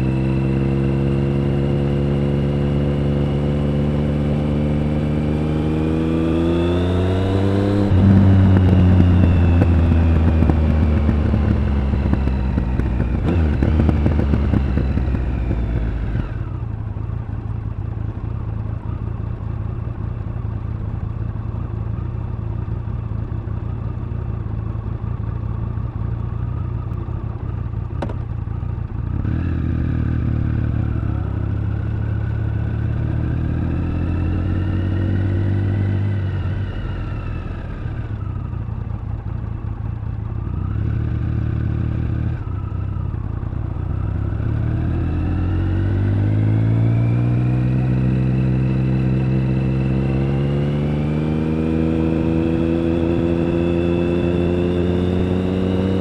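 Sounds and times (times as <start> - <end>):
motorcycle engine revving: 0.0 - 56.0
motorcycle idling: 7.9 - 32.9, 36.5 - 44.4.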